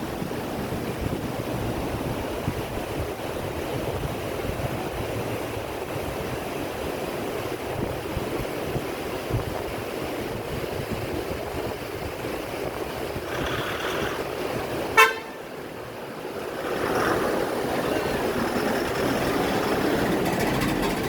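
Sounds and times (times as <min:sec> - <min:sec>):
river water rushing: 0:00.3 - 0:21.0
vehicle horn toot: 0:14.9 - 0:15.5.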